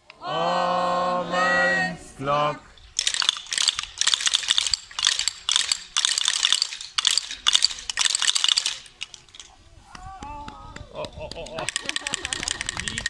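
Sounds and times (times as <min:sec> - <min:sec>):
wooden rattles clattering: 0:02.8 - 0:09.7, 0:11.1 - 0:13.0.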